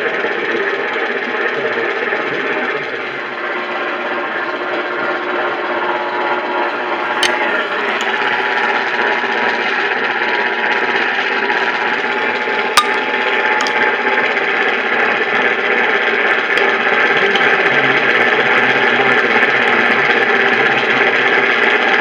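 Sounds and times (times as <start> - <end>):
sharp click: 7.2 - 8.4, 12.8 - 13.8.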